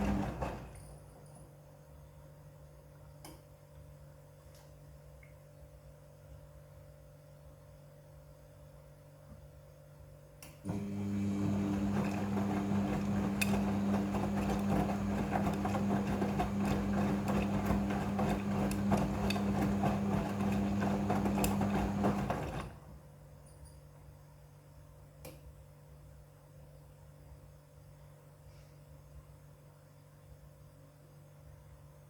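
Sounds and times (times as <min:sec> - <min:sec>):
washing machine drum churning: 0:00.0 - 0:00.8, 0:10.7 - 0:22.8.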